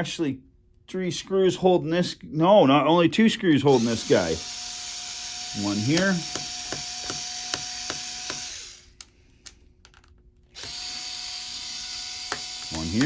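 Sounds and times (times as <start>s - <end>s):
electric screwdriver running: 3.7s - 8.9s, 10.5s - 13.0s.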